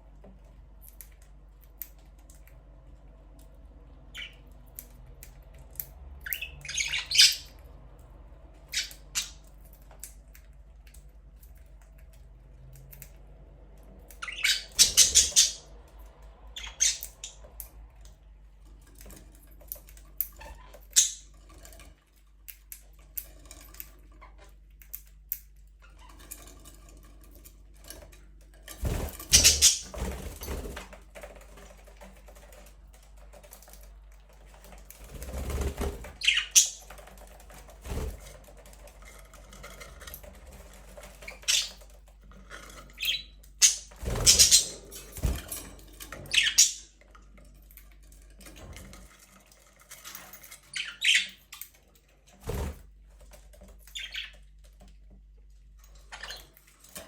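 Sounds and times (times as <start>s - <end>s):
budgerigars chirping and squawking: 4.1s - 4.4s, 5.8s - 7.6s, 8.7s - 9.5s, 14.1s - 15.7s, 16.6s - 17.4s, 20.2s - 21.4s, 28.8s - 30.6s, 35.2s - 37.1s, 40.7s - 41.9s, 42.8s - 45.4s, 46.1s - 47.0s, 50.6s - 51.7s, 53.8s - 54.4s.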